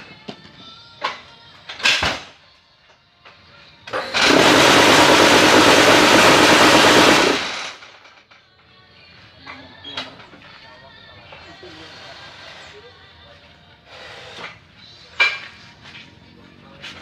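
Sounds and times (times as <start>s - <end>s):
hydraulic press running: 3.9s - 8.1s.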